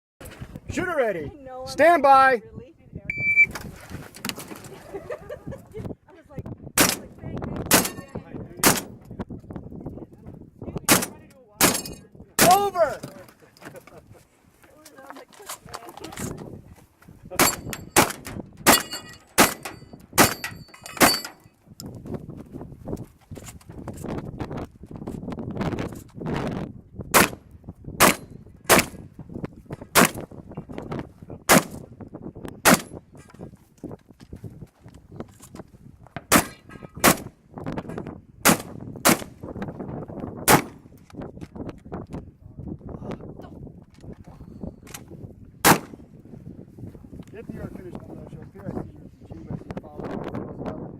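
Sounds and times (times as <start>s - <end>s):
shotgun shots: 6.8s - 7.1s, 7.7s - 8.0s, 8.6s - 8.9s, 17.4s - 21.2s, 27.1s - 27.4s, 28.0s - 29.0s, 30.0s - 30.2s, 31.5s - 31.8s, 32.6s - 32.9s, 36.3s - 37.3s, 38.4s - 39.3s, 40.5s - 40.8s, 45.6s - 46.0s
gun handling clicks and knocks: 14.6s - 22.0s, 32.6s - 37.2s, 40.9s - 42.3s, 43.8s - 46.0s.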